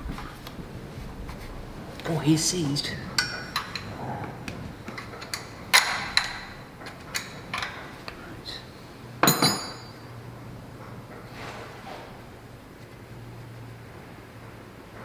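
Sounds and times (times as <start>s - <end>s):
metal tools tapping on metal: 9.2s - 10.1s.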